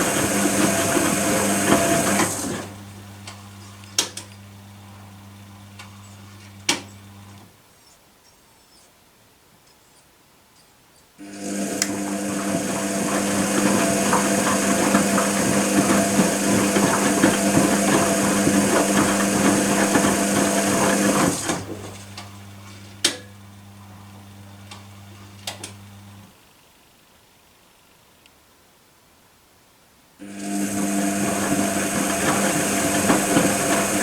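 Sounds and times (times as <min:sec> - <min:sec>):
washing machine running: 0:00.0 - 0:07.4, 0:11.2 - 0:26.3, 0:30.2 - 0:34.0.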